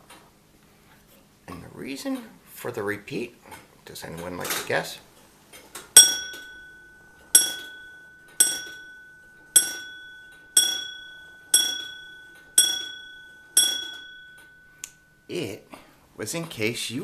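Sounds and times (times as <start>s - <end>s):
clock hammer striking bell: 6.0s - 15.3s.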